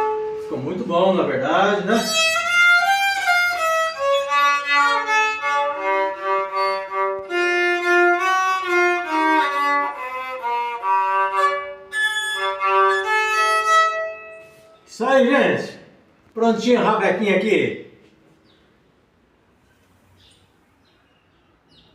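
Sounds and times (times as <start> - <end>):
bowed fiddle melody: 0.0 - 14.9.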